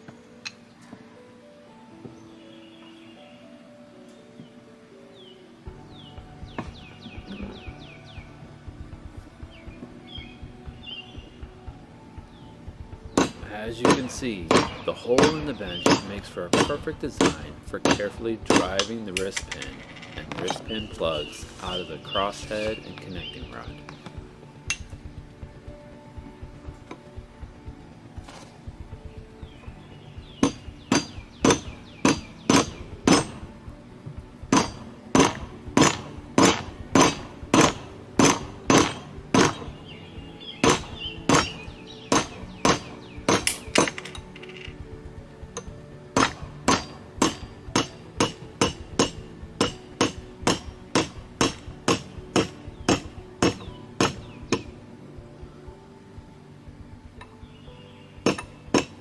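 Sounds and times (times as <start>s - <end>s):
hammer blows on metal: 13.0s - 25.5s, 29.1s - 44.4s, 45.5s - 54.8s, 58.2s - 59.0s.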